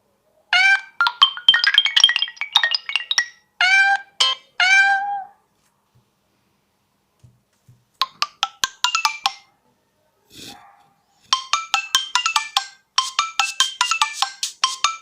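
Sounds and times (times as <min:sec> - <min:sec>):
mallet percussion ringtone melody: 0:01.0 - 0:03.5, 0:08.0 - 0:09.4, 0:11.3 - 0:15.0.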